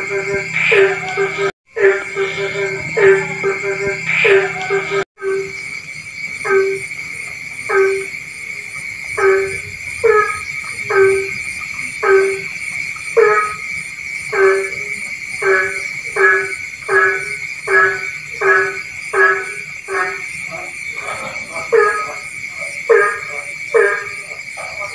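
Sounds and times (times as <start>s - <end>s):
frog honking croaks: 0.0s - 5.7s, 6.4s - 24.9s
high-pitched drone: 0.0s - 5.7s.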